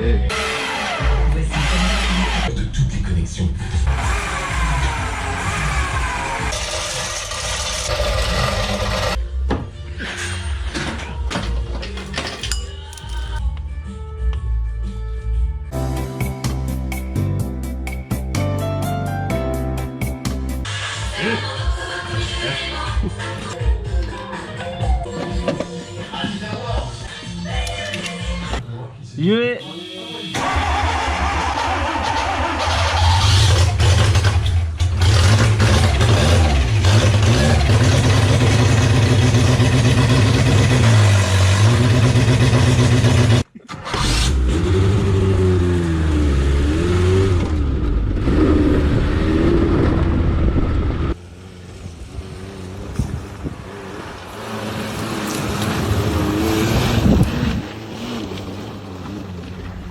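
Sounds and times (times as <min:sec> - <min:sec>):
car engine revving: 0:03.4 - 0:09.2, 0:30.4 - 0:59.9.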